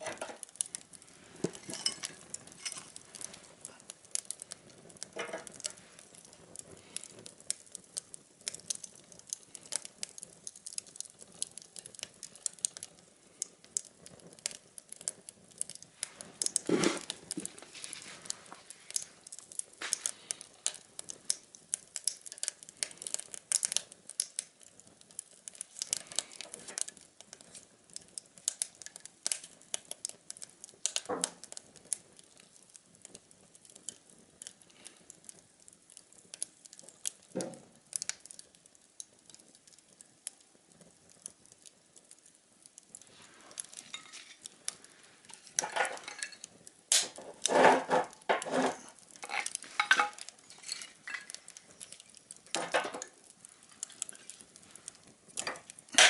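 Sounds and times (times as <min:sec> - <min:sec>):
tin can stove clinking: 0:00.0 - 0:00.6, 0:01.4 - 0:03.3, 0:05.1 - 0:05.7, 0:45.3 - 0:51.4, 0:52.5 - 0:53.1, 0:55.4 - 0:56.0.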